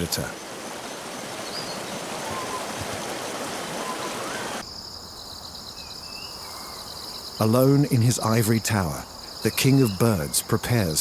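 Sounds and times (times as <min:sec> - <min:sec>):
water rushing: 0:00.0 - 0:04.6
faint bird call: 0:01.6 - 0:02.9, 0:03.8 - 0:04.6
insect trill: 0:03.4 - 0:11.0.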